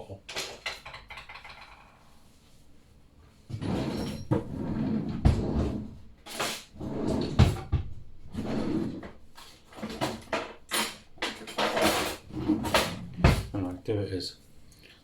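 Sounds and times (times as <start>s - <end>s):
knocks and thumps: 7.3s - 8.0s, 11.2s - 13.6s.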